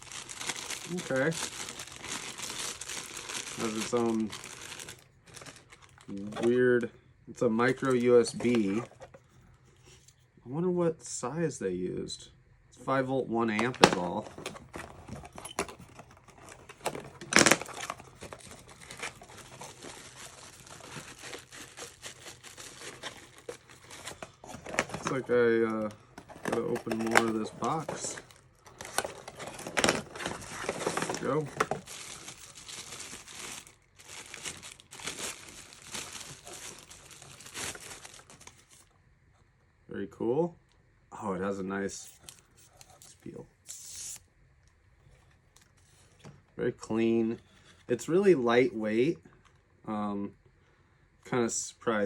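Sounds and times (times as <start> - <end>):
packaging tearing crunch: 0.0 - 6.4, 15.8 - 38.8
packaging crinkling and rustling: 0.0 - 6.6, 7.6 - 9.3, 13.5 - 38.9.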